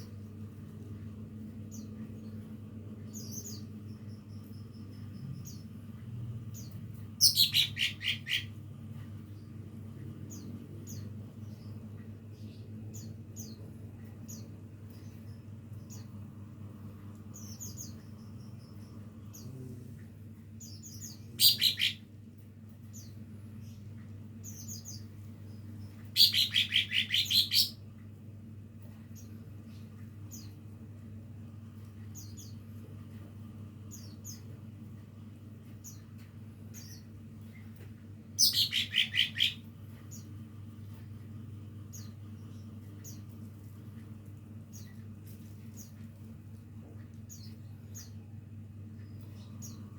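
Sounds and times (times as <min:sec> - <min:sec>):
bird chirping: 0:06.5 - 0:08.6, 0:20.6 - 0:22.1, 0:24.4 - 0:27.8, 0:38.4 - 0:40.3.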